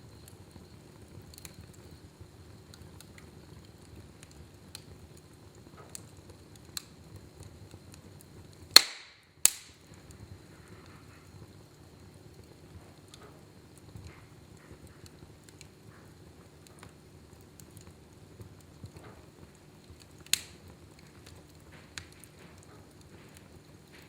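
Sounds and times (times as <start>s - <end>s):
fire crackling in fireplace: 0.0s - 24.0s
loud sharp fire pops: 8.0s - 10.1s, 20.0s - 24.0s.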